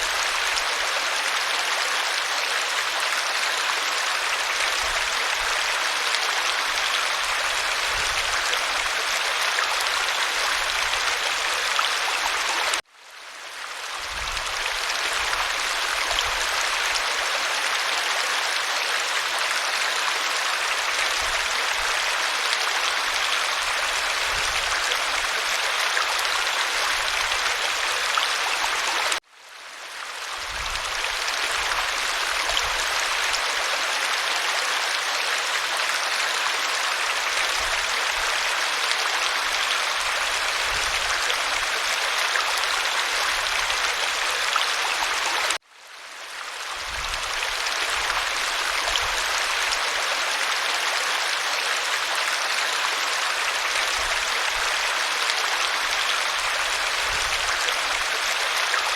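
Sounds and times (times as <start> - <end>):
waterfall rushing: 47.2 - 58.9.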